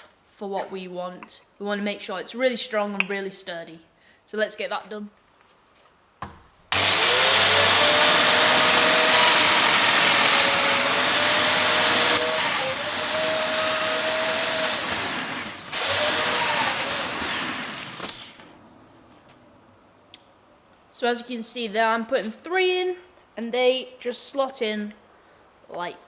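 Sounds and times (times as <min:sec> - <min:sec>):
power tool motor whining: 0:06.7 - 0:18.5.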